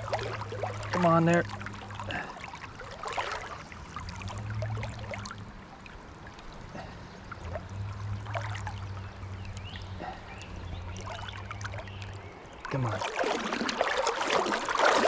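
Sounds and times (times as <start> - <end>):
low steady rumble: 0.0 - 13.0
stream water running: 0.0 - 15.0
water splashes: 0.0 - 15.0.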